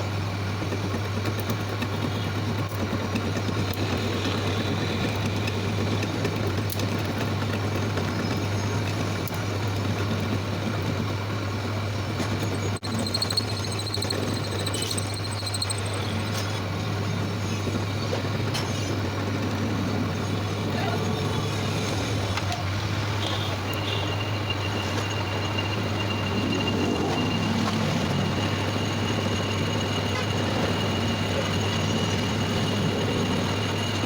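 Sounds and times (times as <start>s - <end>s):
lathe motor hum: 12.8s - 34.0s
faint high pulsing whine: 19.2s - 34.0s.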